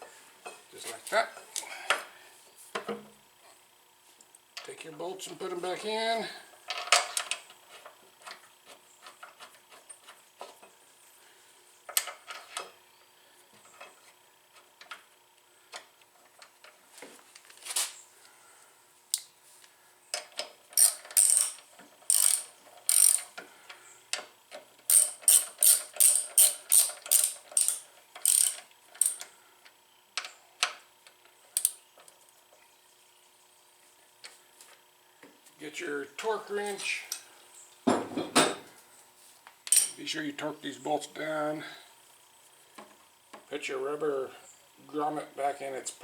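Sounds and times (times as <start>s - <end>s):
socket ratchet clicking: 20.7s - 23.4s, 24.9s - 29.3s, 31.6s - 31.8s, 39.7s - 40.0s.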